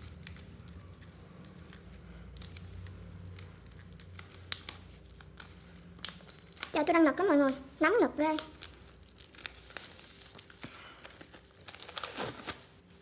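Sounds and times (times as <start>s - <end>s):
plastic wrapper crinkling: 0.0s - 13.0s.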